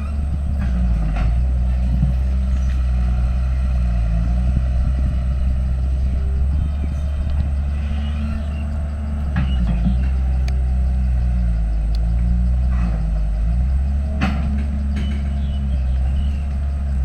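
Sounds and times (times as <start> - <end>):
heavy machine diesel engine: 0.0 - 17.0.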